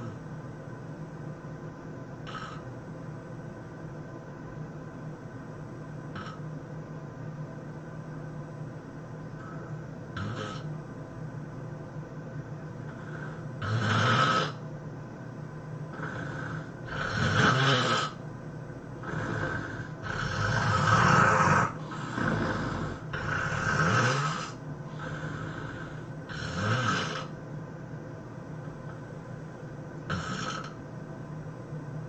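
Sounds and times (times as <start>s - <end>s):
person snoring heavily: 0.0s - 0.2s, 2.2s - 2.7s, 6.1s - 6.4s, 9.4s - 10.7s, 12.9s - 14.6s, 15.9s - 18.2s, 19.0s - 27.4s, 30.1s - 30.8s.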